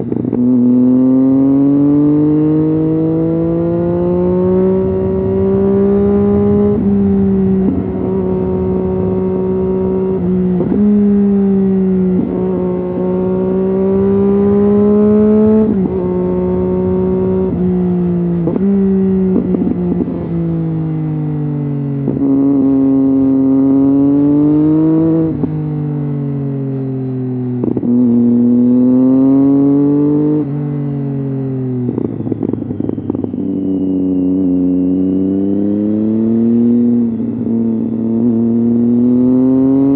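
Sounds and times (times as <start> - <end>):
motorcycle engine revving: 0.0 - 39.9
exhaust crackle: 3.5 - 13.5, 25.2 - 28.7.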